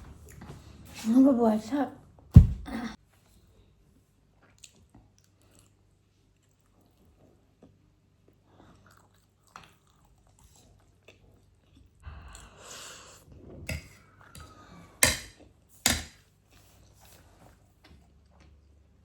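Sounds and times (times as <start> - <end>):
chewing: 4.3 - 12.7.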